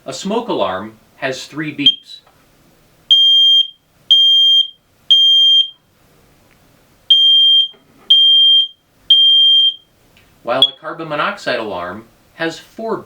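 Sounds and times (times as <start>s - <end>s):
smoke alarm beeping: 3.1s - 5.8s, 7.1s - 9.9s, 10.6s - 10.8s.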